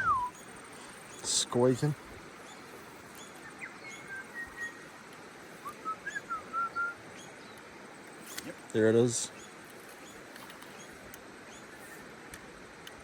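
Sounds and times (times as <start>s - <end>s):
bird whistling song: 0.0s - 1.3s, 2.5s - 7.6s.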